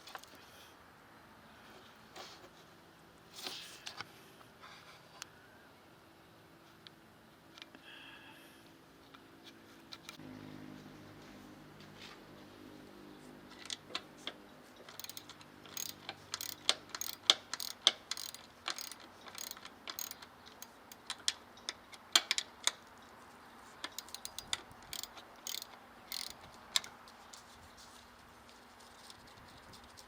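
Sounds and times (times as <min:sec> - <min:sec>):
hand tools clinking on metal: 0:14.9 - 0:20.8, 0:24.0 - 0:26.3.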